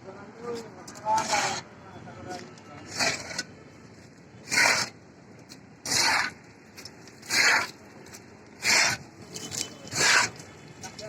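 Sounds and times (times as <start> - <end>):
rough scraping strokes: 0.5 - 1.7, 2.3 - 5.0, 5.8 - 10.5.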